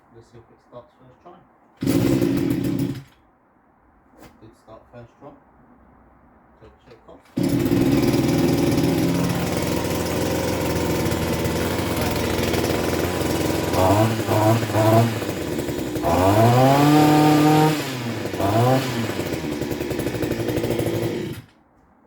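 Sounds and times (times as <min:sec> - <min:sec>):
two-stroke engine idling and revving: 0:01.8 - 0:03.0, 0:07.4 - 0:21.5.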